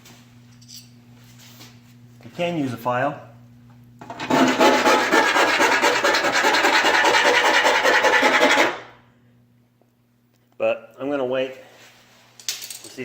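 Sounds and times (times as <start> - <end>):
hand file rasping on metal: 4.1 - 8.9.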